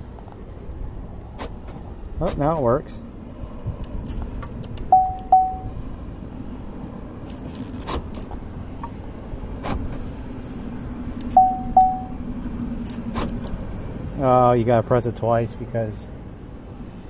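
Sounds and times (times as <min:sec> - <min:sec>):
steady low hum: 0:00.0 - 0:17.0
car horn chirps: 0:04.9 - 0:05.7, 0:11.4 - 0:12.2.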